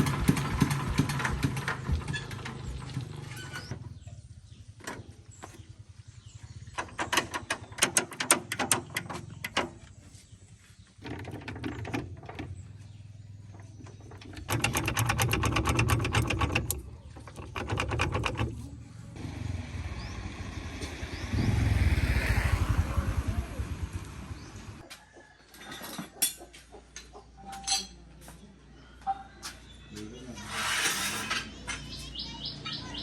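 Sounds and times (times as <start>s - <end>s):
rapid mechanical clicking: 14.1s - 18.6s
low rumble: 19.0s - 24.8s.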